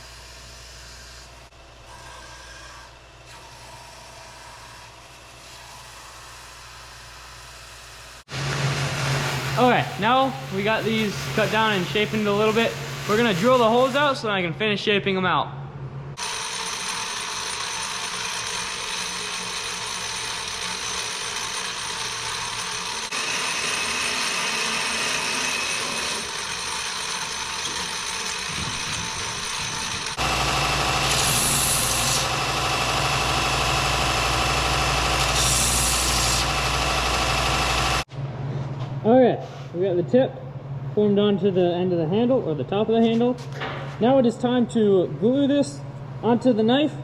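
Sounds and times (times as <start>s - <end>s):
power tool motor running: 0.0s - 14.0s, 16.2s - 38.1s
deeper-running machine: 8.2s - 39.0s.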